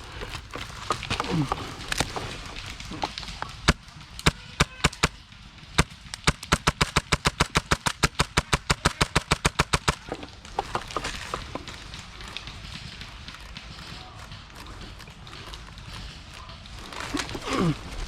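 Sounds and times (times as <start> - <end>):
airsoft gun firing: 1.2 - 15.3.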